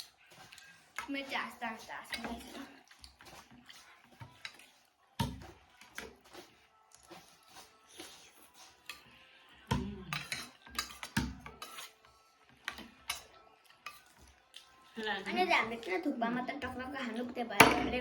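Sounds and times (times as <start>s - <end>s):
cutlery clinking against bowls: 2.1s - 6.4s, 9.7s - 14.8s.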